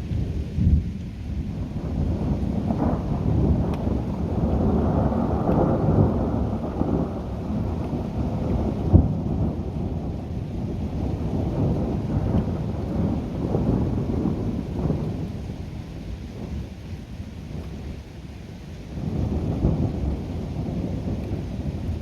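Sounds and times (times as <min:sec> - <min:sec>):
rain: 0:00.0 - 0:22.0
thunder rumbling: 0:00.0 - 0:22.0
thunder crack: 0:01.6 - 0:15.2.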